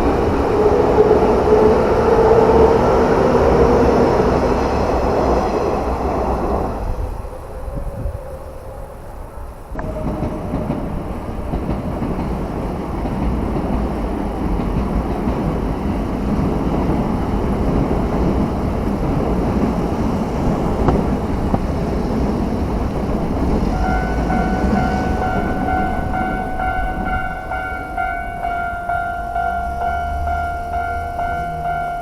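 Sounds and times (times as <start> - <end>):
train wheels rumbling on rails: 0.0 - 32.0
steady ringing tone: 23.8 - 32.0.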